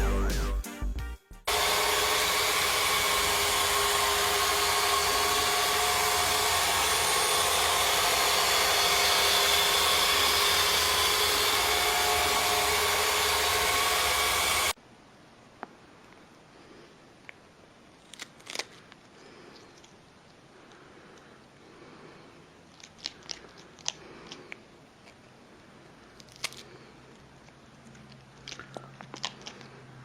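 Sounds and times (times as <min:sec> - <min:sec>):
blower rushing noise: 0:01.5 - 0:14.8.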